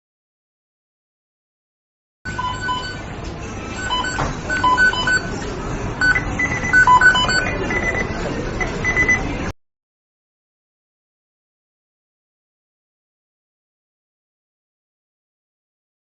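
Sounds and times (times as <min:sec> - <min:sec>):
short electronic beeps: 0:02.3 - 0:03.0, 0:03.7 - 0:05.4, 0:06.0 - 0:09.4.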